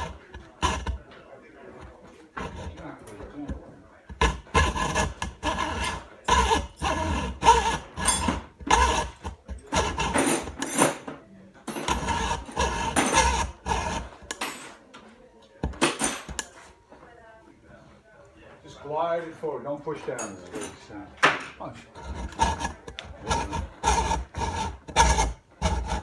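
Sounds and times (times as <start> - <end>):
hacksaw cutting tube: 0.0 - 1.1, 1.8 - 11.0, 11.7 - 14.5, 15.6 - 16.6, 21.9 - 26.0.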